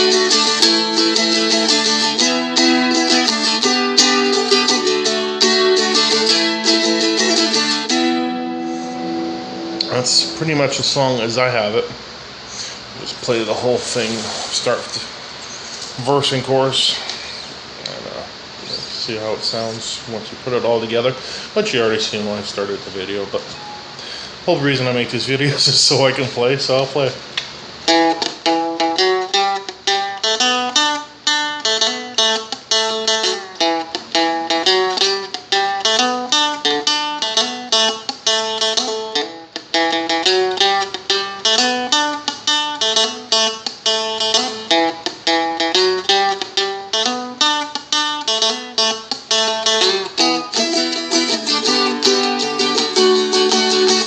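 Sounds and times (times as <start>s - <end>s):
plucked string instrument: 0.0s - 12.0s, 27.9s - 54.0s
strumming: 0.0s - 24.1s, 27.4s - 54.0s.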